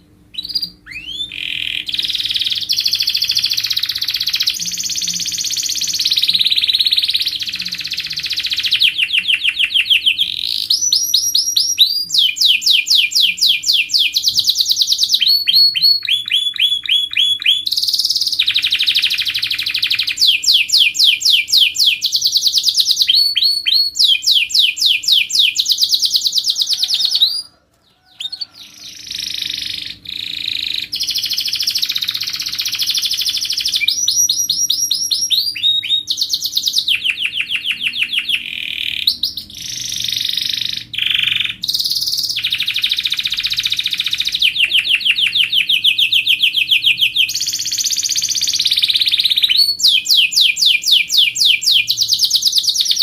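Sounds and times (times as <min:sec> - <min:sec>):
canary singing trills: 0:00.0 - 0:53.0.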